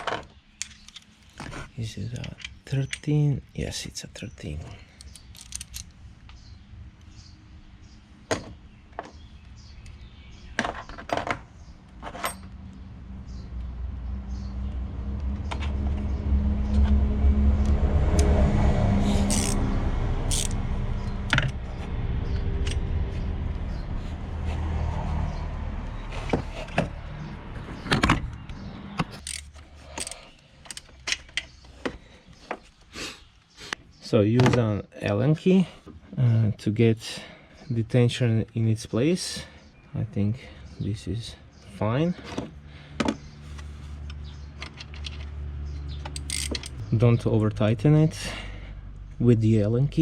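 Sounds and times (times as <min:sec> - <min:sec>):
metal tools clinking: 0:04.9 - 0:06.0, 0:12.0 - 0:12.6, 0:20.3 - 0:20.6, 0:29.1 - 0:31.4, 0:46.1 - 0:46.8
vehicle engine: 0:11.2 - 0:33.2, 0:40.4 - 0:50.0.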